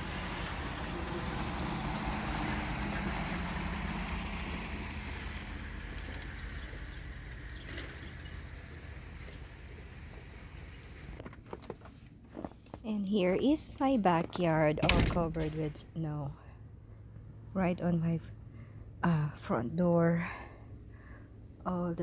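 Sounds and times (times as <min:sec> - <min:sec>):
vehicle passing by: 0:00.0 - 0:08.1.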